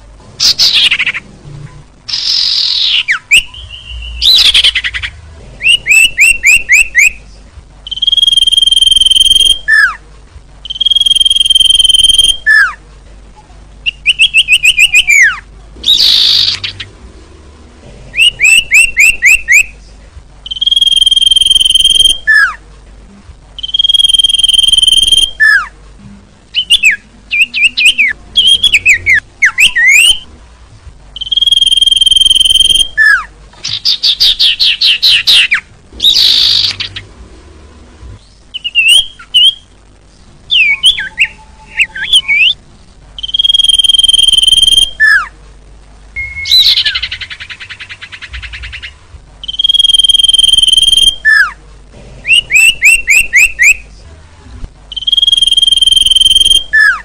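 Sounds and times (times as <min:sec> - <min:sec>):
songbirds chirping: 0:00.0 - 0:57.0
high whistled bird notes: 0:02.1 - 0:07.2, 0:07.8 - 0:10.0, 0:10.6 - 0:12.8, 0:13.8 - 0:16.9, 0:18.1 - 0:19.7, 0:20.4 - 0:22.6, 0:23.6 - 0:25.7, 0:26.5 - 0:30.3, 0:31.2 - 0:37.1, 0:38.5 - 0:39.7, 0:40.5 - 0:42.6, 0:43.2 - 0:45.3, 0:46.2 - 0:51.6, 0:52.3 - 0:53.8, 0:54.9 - 0:57.0.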